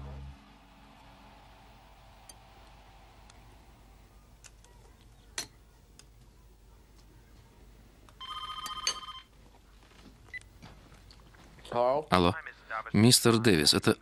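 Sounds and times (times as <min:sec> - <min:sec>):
telephone ringing: 0:08.2 - 0:09.3.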